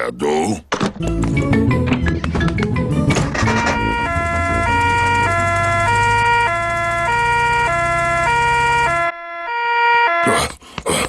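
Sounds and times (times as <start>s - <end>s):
cartoon two-tone siren: 3.4s - 10.4s
low engine hum: 3.7s - 9.0s.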